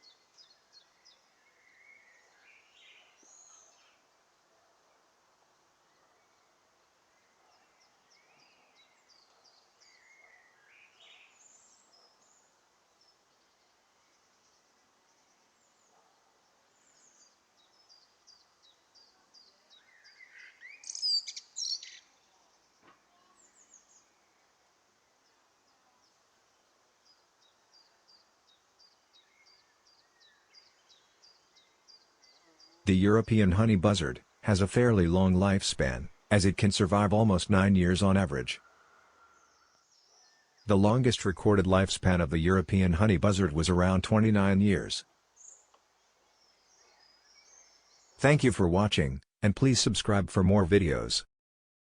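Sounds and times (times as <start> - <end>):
small birds chirping: 0.0 - 36.3, 36.9 - 43.1, 43.8 - 48.2
small bird chirping: 7.2 - 24.5.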